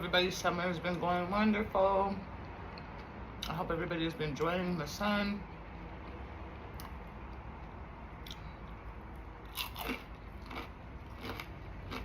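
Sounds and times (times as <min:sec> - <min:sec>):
person chewing crunchy food: 0:06.8 - 0:12.0.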